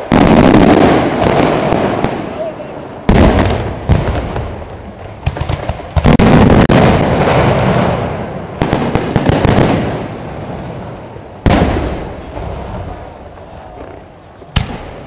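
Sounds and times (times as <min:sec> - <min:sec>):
firework pops and crackles: 0:03.0 - 0:10.2, 0:11.4 - 0:15.0.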